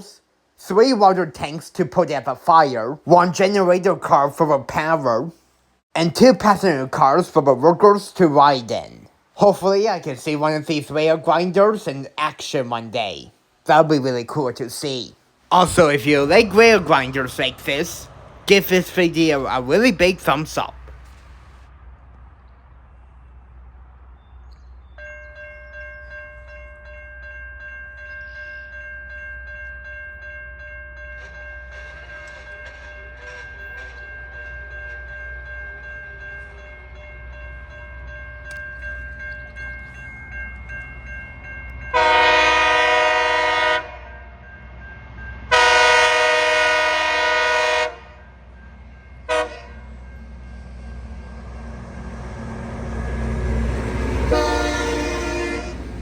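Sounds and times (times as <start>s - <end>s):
train approaching rumble and whine: 15.2s - 56.0s
locomotive air horn blasts: 41.9s - 44.2s, 45.5s - 48.2s, 49.3s - 49.9s, 54.3s - 56.0s.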